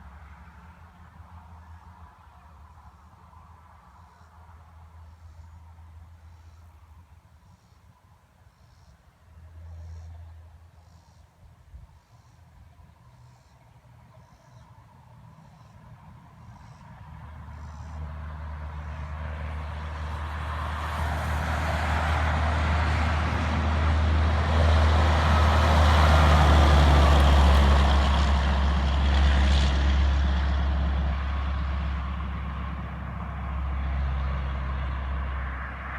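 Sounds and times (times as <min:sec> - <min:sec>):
diesel truck passing by: 0:15.2 - 0:35.9.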